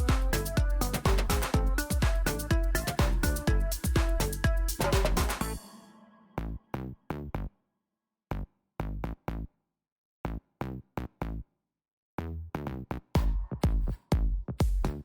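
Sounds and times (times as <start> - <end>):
staccato electronic music hits: 0.0 - 5.7.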